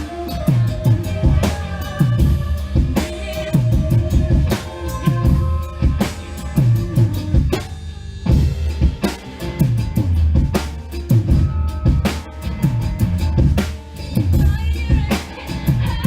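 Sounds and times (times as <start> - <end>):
drum kit groove: 0.0 - 16.0
recorded song: 0.0 - 16.0.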